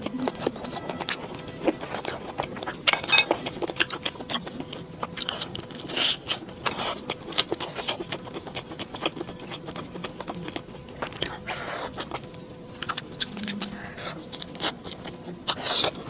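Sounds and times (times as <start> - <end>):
chewing crunches and mouth clicks: 0.0 - 16.0.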